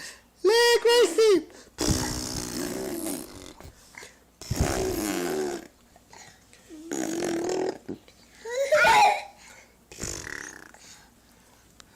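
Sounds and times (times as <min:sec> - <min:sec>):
toddler high-pitched vocal sound: 0:08.4 - 0:09.4.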